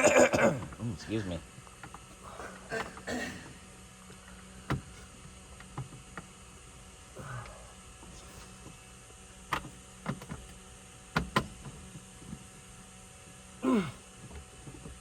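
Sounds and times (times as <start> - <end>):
steady hum: 0.0 - 15.0.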